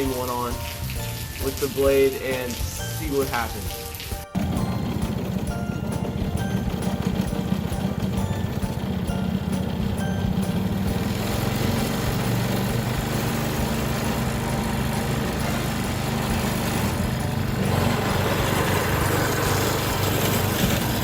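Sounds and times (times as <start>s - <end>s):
lawn mower engine running: 4.3s - 21.0s.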